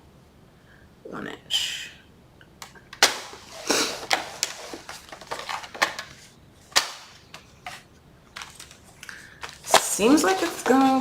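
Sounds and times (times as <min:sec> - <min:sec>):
cardstock clicking and scraping: 0:08.4 - 0:11.0.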